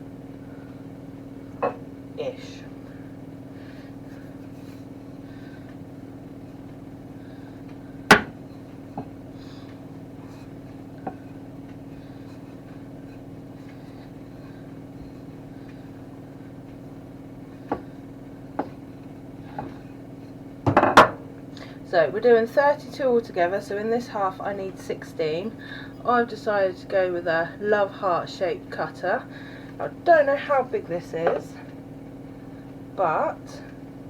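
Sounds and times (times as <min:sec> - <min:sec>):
steady low hum: 0:00.0 - 0:34.0
rolling pin knocks: 0:08.1 - 0:08.4, 0:20.6 - 0:21.2.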